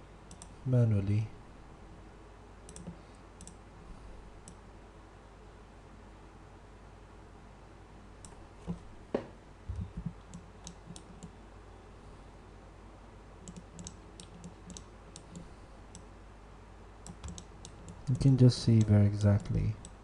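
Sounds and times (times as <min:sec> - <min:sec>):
low room hum: 0:00.0 - 0:20.0
computer mouse clicking: 0:00.3 - 0:00.6, 0:02.7 - 0:03.6, 0:09.7 - 0:11.4, 0:13.4 - 0:16.1, 0:17.0 - 0:20.0
soft low thumps: 0:08.7 - 0:10.2.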